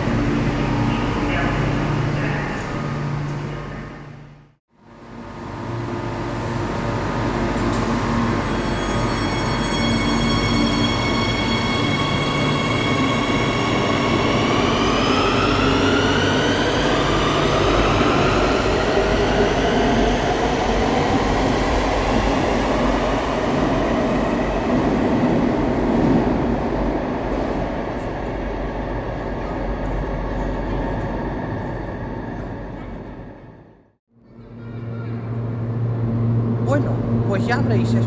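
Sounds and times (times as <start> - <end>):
train rumbling: 0.0 - 38.0.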